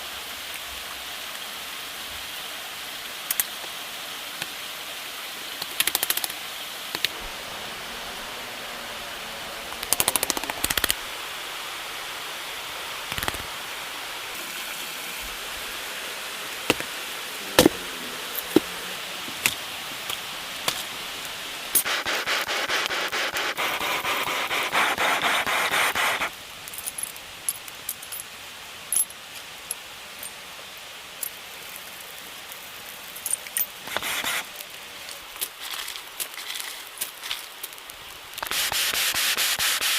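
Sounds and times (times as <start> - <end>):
steady hiss: 0.0 - 39.9.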